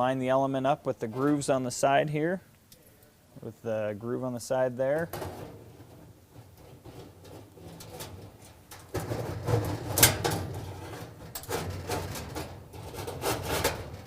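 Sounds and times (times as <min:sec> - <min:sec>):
metal knocking and scraping: 0:05.0 - 0:14.0.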